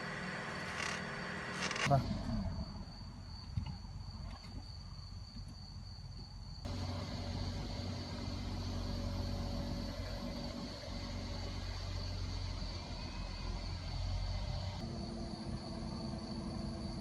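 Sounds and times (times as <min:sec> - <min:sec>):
car engine idling: 0:06.6 - 0:17.0.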